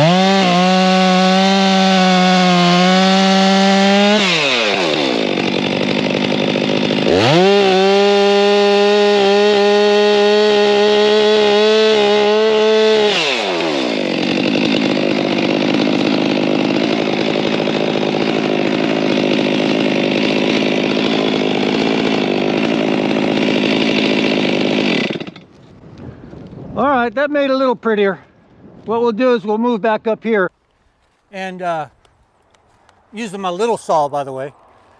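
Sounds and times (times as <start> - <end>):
chainsaw revving and idling: 0.0 - 25.5.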